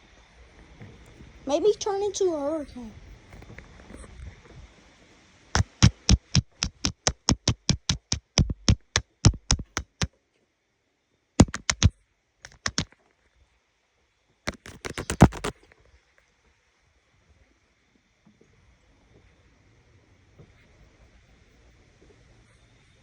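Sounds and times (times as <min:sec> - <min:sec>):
sharp clicks: 0:05.6 - 0:10.1, 0:11.4 - 0:11.9, 0:12.5 - 0:12.9, 0:14.5 - 0:15.5.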